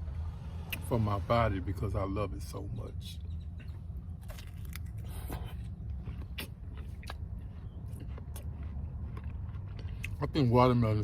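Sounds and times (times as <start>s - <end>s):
steady low hum: 0.0s - 11.0s
chewing juicy watermelon: 3.5s - 11.0s.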